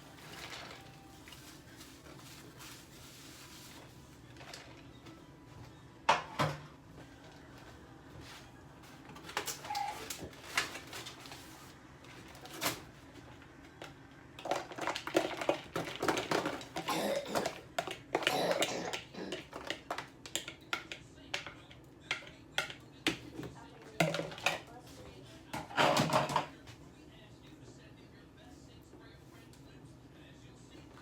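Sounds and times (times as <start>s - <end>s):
objects knocking and clattering: 13.8s - 24.7s, 25.5s - 26.6s.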